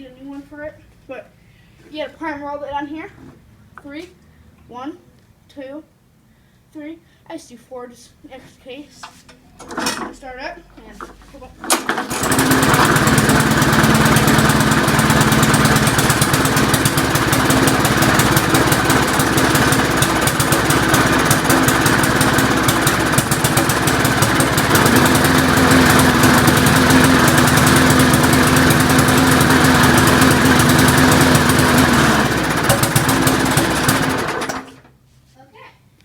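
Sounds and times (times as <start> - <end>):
lawnmower engine running: 11.6 - 34.9.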